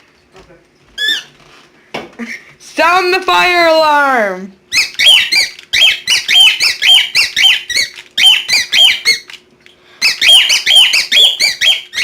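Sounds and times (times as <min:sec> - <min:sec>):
guinea pig squealing: 0:01.0 - 0:01.4, 0:04.7 - 0:09.4, 0:10.0 - 0:12.0.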